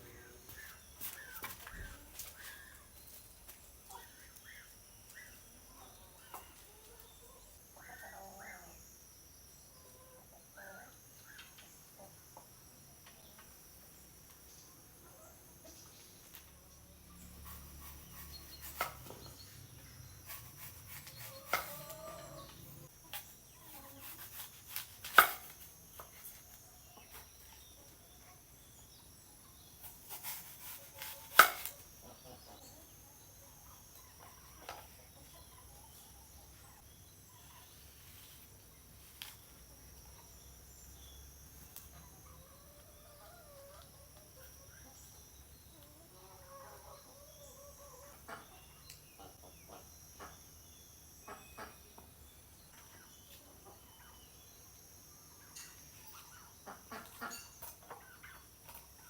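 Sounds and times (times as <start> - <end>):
faint hen calls: 21.3 - 22.9.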